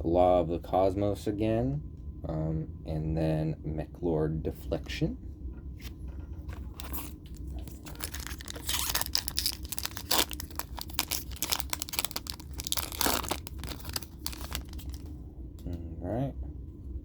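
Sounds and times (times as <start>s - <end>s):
foil wrapper tearing and crinkling: 6.6s - 15.1s.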